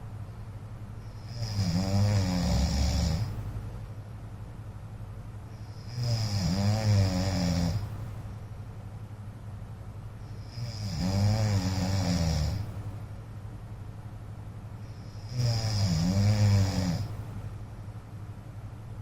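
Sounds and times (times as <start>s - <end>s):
man snoring: 1.2s - 3.4s, 5.7s - 8.0s, 10.4s - 12.8s, 15.0s - 17.3s.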